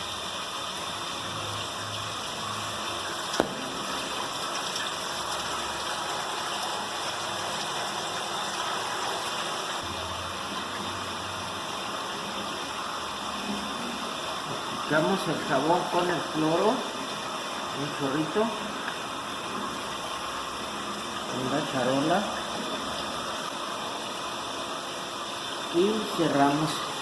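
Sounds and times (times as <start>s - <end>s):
water running into a jug: 0.0s - 27.0s
sharp knock: 3.4s - 4.0s.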